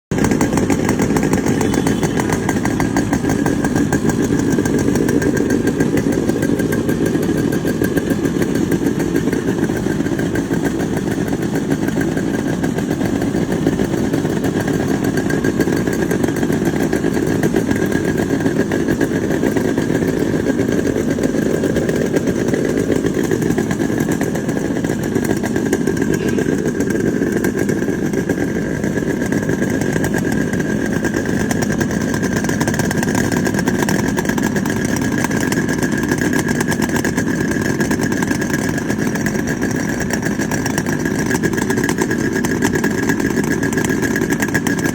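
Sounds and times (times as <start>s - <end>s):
two-stroke motorcycle engine running: 0.1s - 44.9s.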